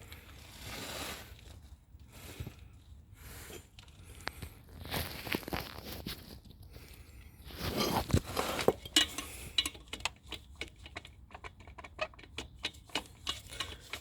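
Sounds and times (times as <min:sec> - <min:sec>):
metal parts clicking and clinking: 0:07.6 - 0:14.0.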